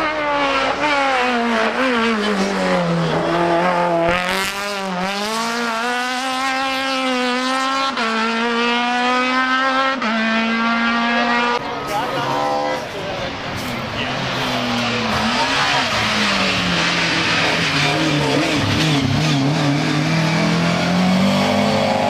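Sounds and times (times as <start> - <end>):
racing car engine accelerating: 0.0 - 11.7, 12.3 - 22.0.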